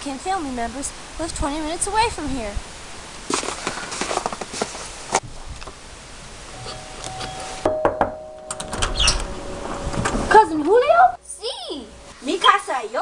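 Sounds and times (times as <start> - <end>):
steady ringing tone: 6.5 - 12.7.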